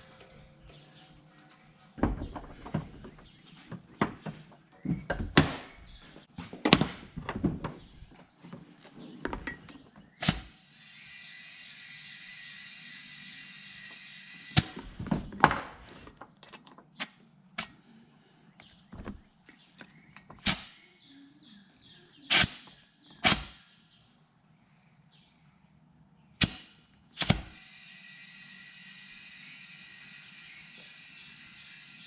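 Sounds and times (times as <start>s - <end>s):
short air hisses and clicks: 10.2s - 10.6s, 20.4s - 20.8s, 22.3s - 23.6s, 26.4s - 27.7s
air hissing from hose: 10.2s - 15.1s, 20.4s - 20.8s, 22.3s - 23.6s, 26.4s - 32.0s.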